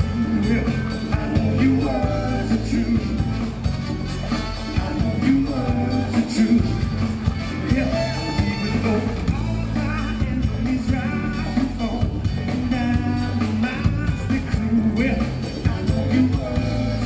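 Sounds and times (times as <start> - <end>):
band music with strong bass: 0.0 - 17.0.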